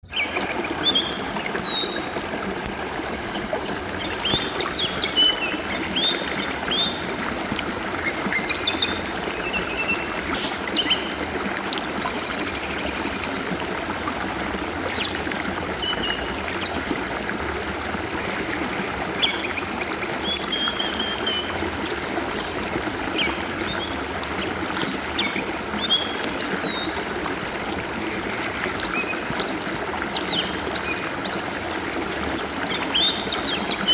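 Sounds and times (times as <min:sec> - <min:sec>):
bird singing: 0:00.0 - 0:07.0, 0:20.3 - 0:27.0
stream water flowing: 0:00.0 - 0:33.9.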